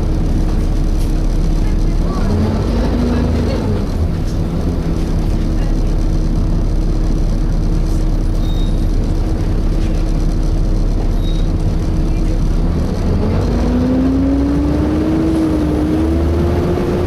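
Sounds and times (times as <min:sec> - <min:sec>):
bus engine and fan drone: 0:00.0 - 0:17.0
faint high squeak: 0:08.4 - 0:08.9, 0:11.2 - 0:11.5.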